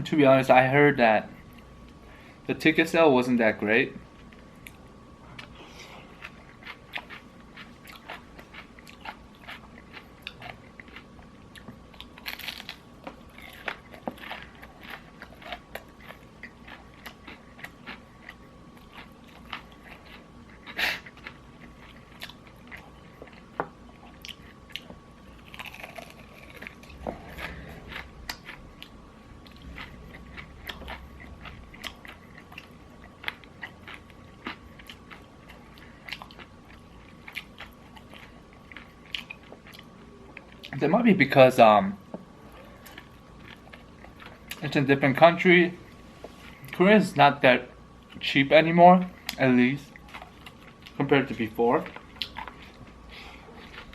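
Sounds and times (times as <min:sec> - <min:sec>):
person crunching fried chicken: 0:05.4 - 0:23.5, 0:24.2 - 0:40.6.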